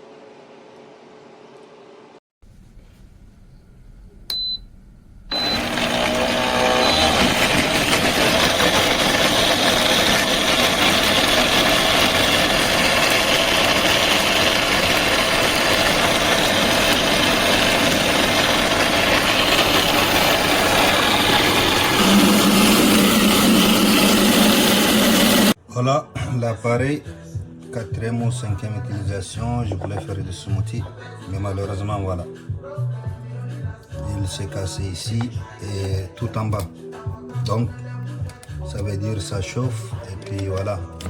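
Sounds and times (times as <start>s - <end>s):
short electronic beep: 5.3s - 5.6s
blender motor running: 5.3s - 25.6s.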